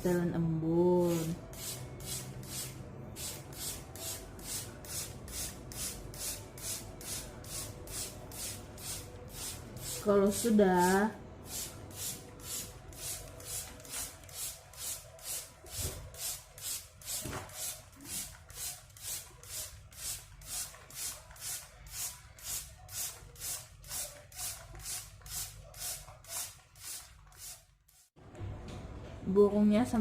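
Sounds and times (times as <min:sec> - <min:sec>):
spray bottle hissing: 0:11.4 - 0:28.1.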